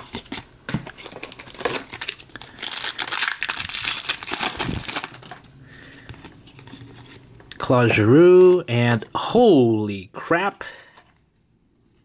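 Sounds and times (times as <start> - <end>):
wrapper crinkling: 0.0 - 5.5.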